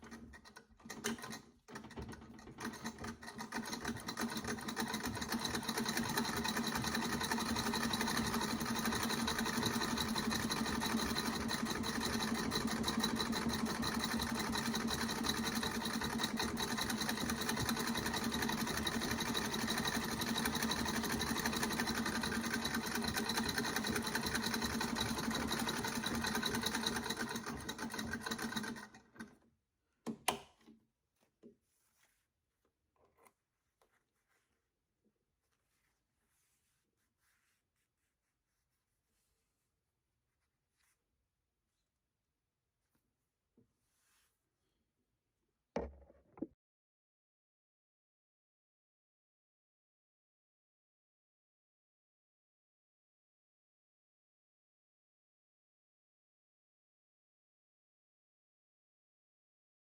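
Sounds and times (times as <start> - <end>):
sewing machine clattering: 0.0 - 29.4.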